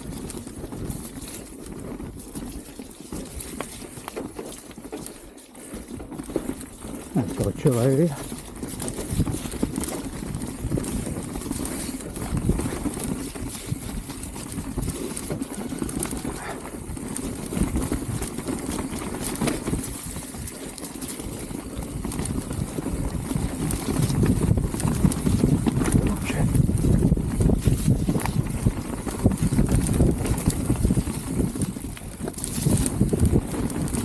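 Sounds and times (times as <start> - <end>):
bike knocking and rattling: 0.0 - 34.0
bike tyre rumble: 0.0 - 34.0
wind on microphone: 8.6 - 20.5, 21.9 - 34.0.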